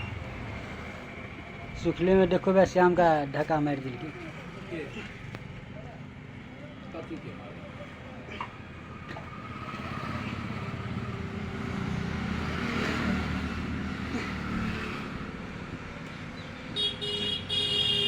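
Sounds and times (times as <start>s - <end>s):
vehicle engine passing by: 9.3s - 15.7s
vehicle horn honking: 16.8s - 18.0s.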